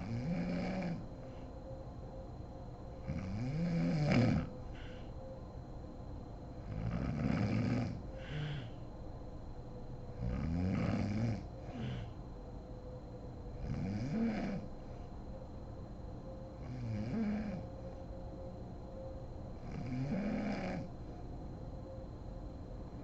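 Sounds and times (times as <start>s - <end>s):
woman snoring: 0.0s - 1.0s, 3.0s - 5.0s, 6.7s - 8.8s, 10.2s - 12.2s, 13.6s - 14.7s, 16.6s - 17.6s, 19.6s - 20.9s
faint steady hum: 0.0s - 23.0s.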